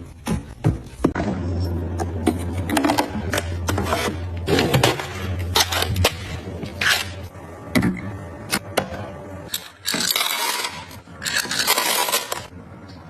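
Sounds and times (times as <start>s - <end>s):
objects scraping: 9.5s - 12.5s.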